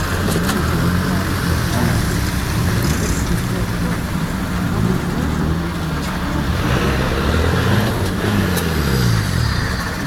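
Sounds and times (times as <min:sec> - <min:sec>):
off-road vehicle engine revving: 0:00.0 - 0:10.0.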